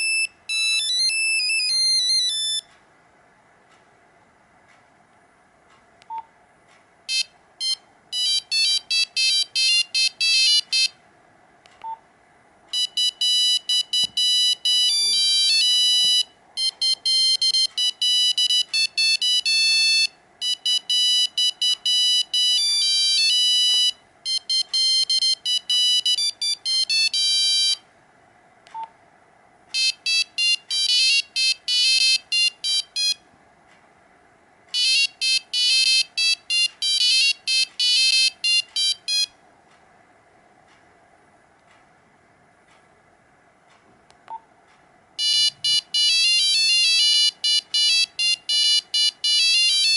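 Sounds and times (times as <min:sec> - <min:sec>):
monophonic phone ringtones: 0:00.0 - 0:02.6, 0:07.1 - 0:10.9, 0:12.8 - 0:27.8, 0:29.8 - 0:33.2, 0:34.8 - 0:39.3, 0:45.2 - 0:49.9.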